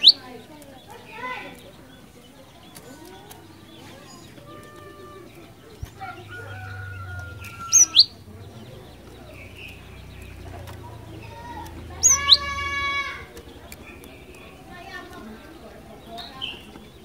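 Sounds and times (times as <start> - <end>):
faint bird calls: 0.0 - 17.0
tit calling sharp high notes: 12.0 - 13.2.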